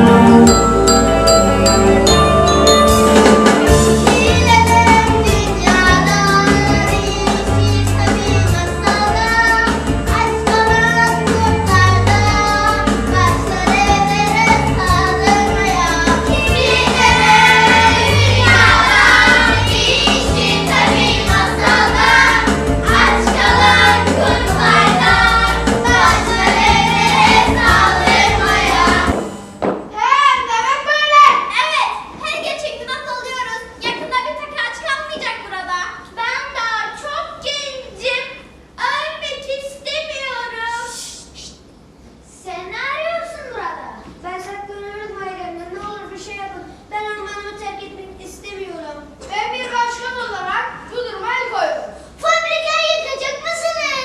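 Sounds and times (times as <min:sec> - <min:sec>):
bass beat: 0:15.8 - 0:29.1
choir singing: 0:15.8 - 0:29.4.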